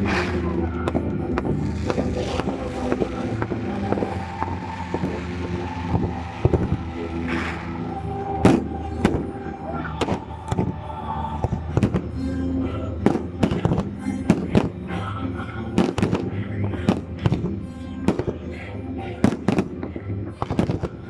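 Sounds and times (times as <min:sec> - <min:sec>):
fireworks bangs: 0:00.0 - 0:09.4
music playing: 0:00.0 - 0:21.0.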